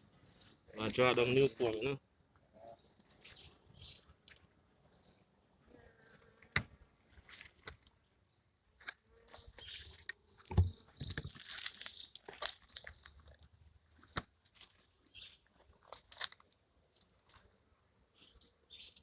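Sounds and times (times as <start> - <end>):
small birds chirping: 0.0 - 19.0
dull thump: 10.5 - 11.3.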